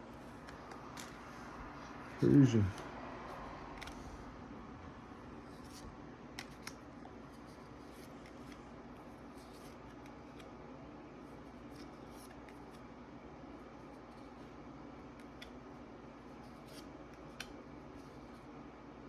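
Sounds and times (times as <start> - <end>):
low room hum: 0.0 - 19.0
trading cards being flipped: 0.1 - 2.9, 3.7 - 4.2, 5.4 - 10.5, 11.4 - 12.8, 15.1 - 15.6, 16.4 - 18.5.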